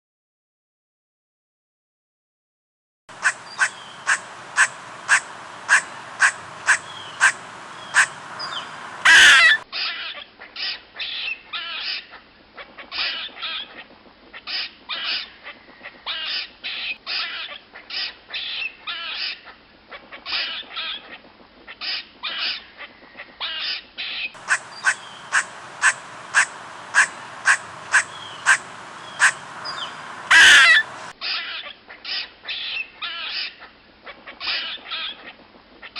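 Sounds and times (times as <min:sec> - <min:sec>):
squirrel alarm calls: 0:03.1 - 0:09.6, 0:24.4 - 0:31.1.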